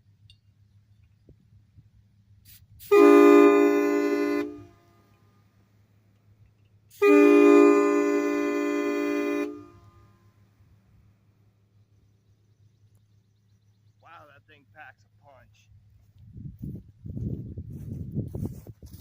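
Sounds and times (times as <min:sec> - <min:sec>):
train horn blasts: 0:02.8 - 0:05.2, 0:06.9 - 0:10.5.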